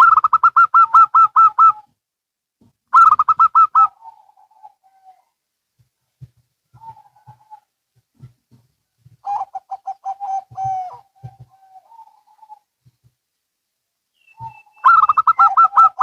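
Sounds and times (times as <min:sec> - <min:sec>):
doves cooing: 0:02.9 - 0:05.4, 0:06.2 - 0:13.0, 0:14.3 - 0:16.0.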